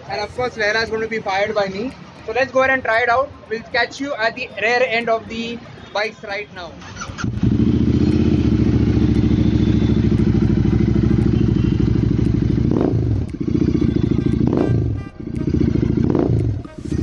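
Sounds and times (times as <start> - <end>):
motorcycle engine idling: 6.8 - 16.6
motorcycle engine revving: 6.8 - 17.0.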